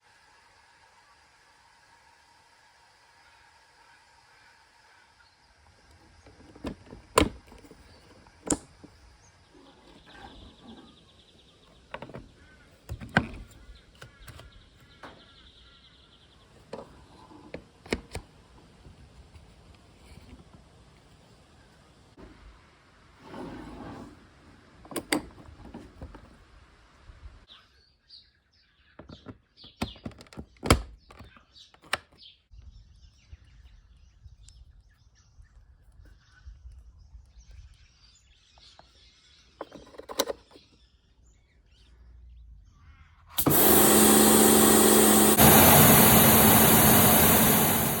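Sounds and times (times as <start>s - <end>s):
pressure washer running: 43.4s - 48.0s.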